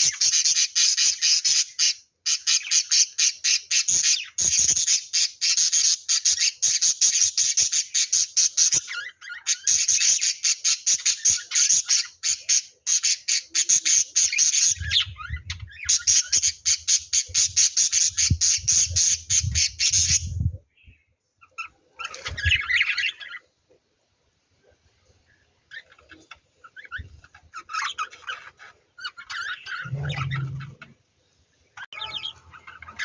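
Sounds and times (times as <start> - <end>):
lovebirds chirping shrilly: 0.0 - 23.4, 25.7 - 30.9, 31.8 - 33.0
low rumble: 29.8 - 30.9.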